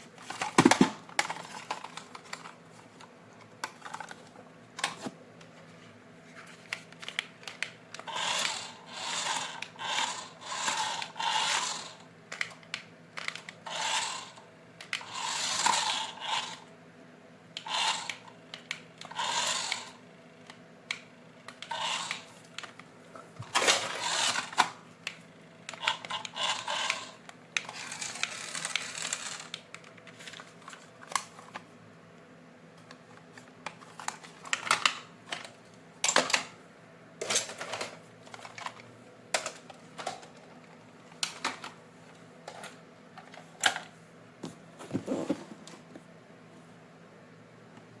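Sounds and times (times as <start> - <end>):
rustling of toy packaging: 0.0 - 3.1, 23.4 - 24.8, 25.8 - 31.7, 37.3 - 41.8.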